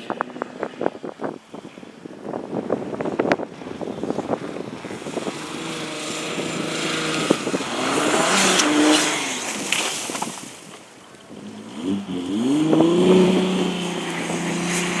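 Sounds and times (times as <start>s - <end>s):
car engine passing at speed: 3.3s - 15.0s.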